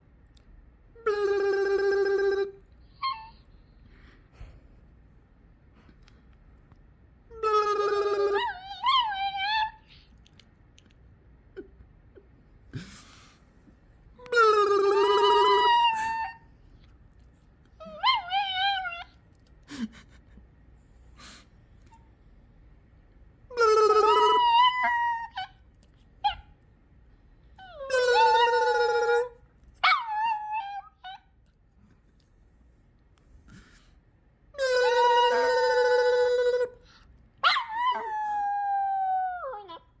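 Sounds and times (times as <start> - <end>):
dog whining: 1.0 - 3.6, 7.3 - 10.2, 14.2 - 16.5, 17.8 - 19.2, 23.5 - 26.5, 27.6 - 31.4, 34.6 - 40.0
dog yelp: 8.4 - 9.9, 17.8 - 19.1, 29.8 - 31.2, 37.4 - 39.8.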